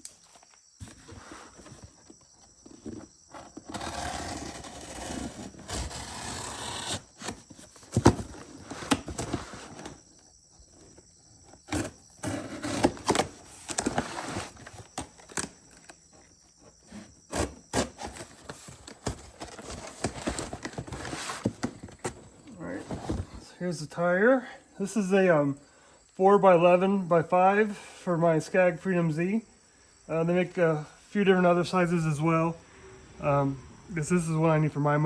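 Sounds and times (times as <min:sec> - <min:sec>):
cardboard box scraping: 0:00.9 - 0:09.9, 0:11.6 - 0:13.2.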